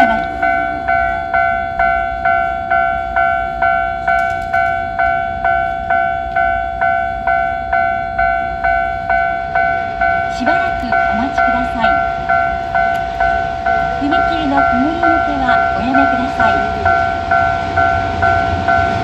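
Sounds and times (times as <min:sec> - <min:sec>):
level crossing warning bell: 0:00.0 - 0:19.0.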